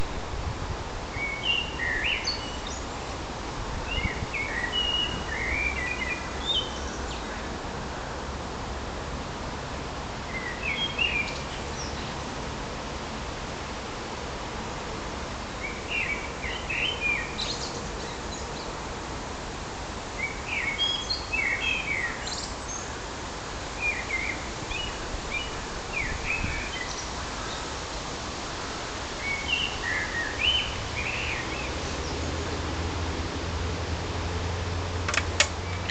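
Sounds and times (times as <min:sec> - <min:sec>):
wind noise: 0:00.0 - 0:01.9, 0:02.8 - 0:07.0, 0:24.5 - 0:29.2
blackbird singing: 0:01.2 - 0:02.8, 0:03.9 - 0:07.2, 0:10.3 - 0:12.1, 0:20.2 - 0:22.8, 0:35.6 - 0:35.9.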